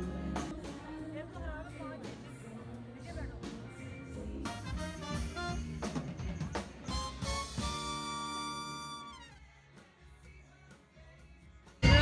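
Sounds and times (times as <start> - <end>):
music with drum kit: 0.0 - 2.5, 3.1 - 12.0.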